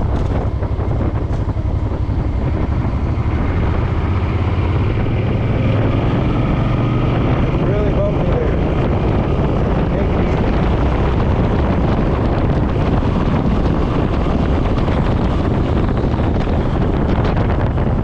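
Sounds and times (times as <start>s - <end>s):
motorcycle engine and road noise: 0.0s - 18.0s
wind buffeting microphone: 0.0s - 18.0s.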